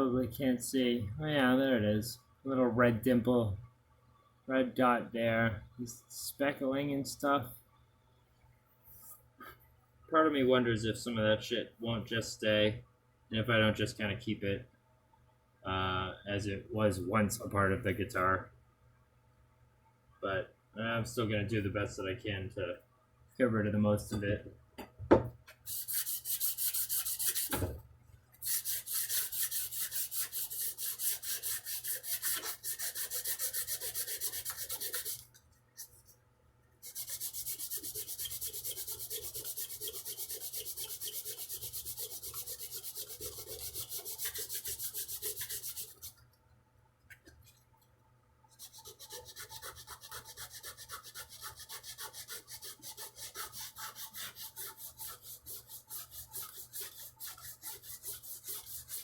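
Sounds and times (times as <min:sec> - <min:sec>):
sandpaper rubbing on wood: 0:25.7 - 0:27.6, 0:28.4 - 0:35.2, 0:36.8 - 0:46.1, 0:48.6 - 0:59.0.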